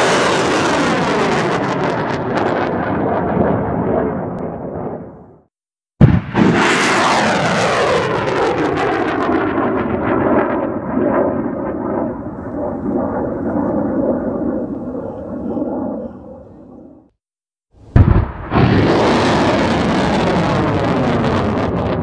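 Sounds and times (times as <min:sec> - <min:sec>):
rocket rushing roar: 0:00.0 - 0:05.3, 0:06.0 - 0:16.0, 0:17.8 - 0:22.0
rocket launcher blast: 0:06.0 - 0:11.4, 0:17.9 - 0:22.0.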